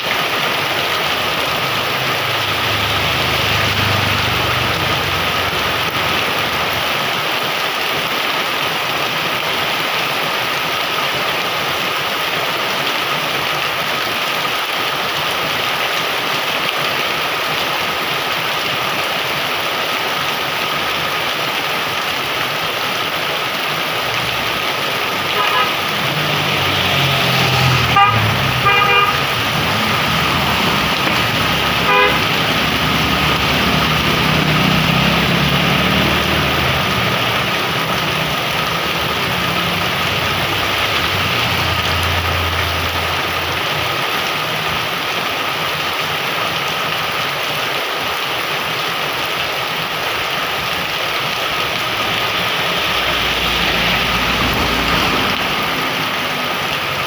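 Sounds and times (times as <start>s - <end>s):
heavy rain: 0.0s - 57.0s
vehicle engine passing: 1.3s - 6.8s, 24.1s - 44.2s, 50.8s - 57.0s
vehicle horn toots: 25.3s - 25.9s, 27.9s - 29.4s, 31.8s - 32.4s.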